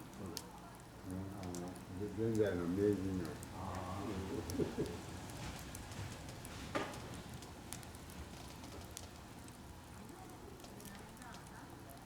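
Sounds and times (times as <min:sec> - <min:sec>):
wood bonfire crackling: 0:00.0 - 0:12.0
sharp fire crack: 0:02.4 - 0:09.8.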